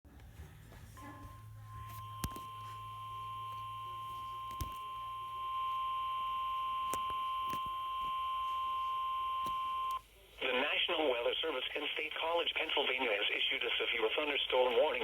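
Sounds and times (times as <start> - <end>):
long steady alarm beep: 1.0 - 10.0
static clicks: 1.9 - 10.0.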